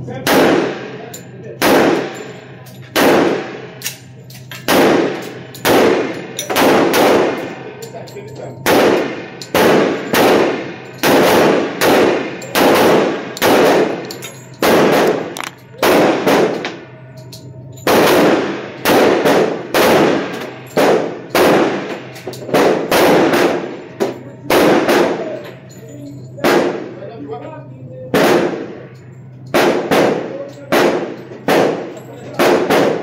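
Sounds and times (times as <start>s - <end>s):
handgun shots echoing indoors: 0.2s - 7.6s, 8.3s - 25.7s, 26.4s - 27.0s, 28.1s - 33.0s.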